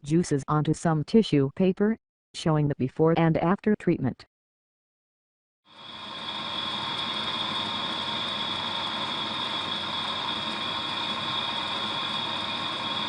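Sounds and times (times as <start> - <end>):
high-pitched whine: 5.7 - 13.0
mechanical hum: 5.8 - 13.0.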